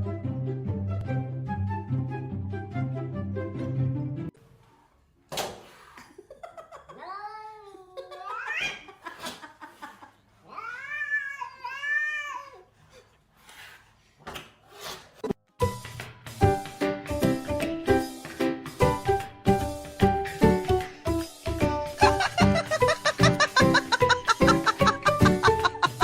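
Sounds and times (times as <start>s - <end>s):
cat yowling: 10.4s - 12.7s.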